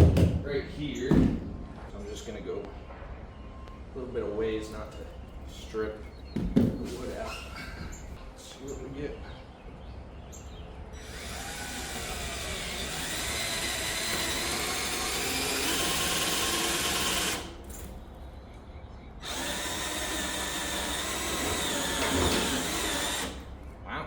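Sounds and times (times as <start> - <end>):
power drill driving screw: 11.0 - 17.9, 19.2 - 23.6.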